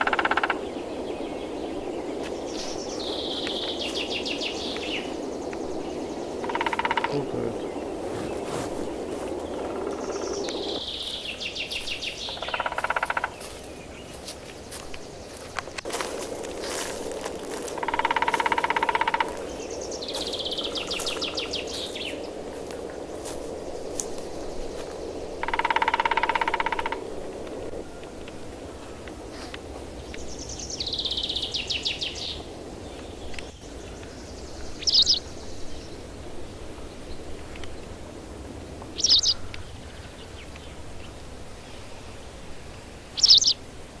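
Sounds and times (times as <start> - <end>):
woodpecker drumming: 0.0 - 13.7, 15.3 - 35.3
songbird trilling: 0.0 - 14.1, 16.6 - 22.7, 24.0 - 28.4, 30.1 - 35.9, 38.9 - 41.9, 43.1 - 43.6
songbird high trill: 34.7 - 35.7, 39.0 - 39.6, 43.2 - 43.6.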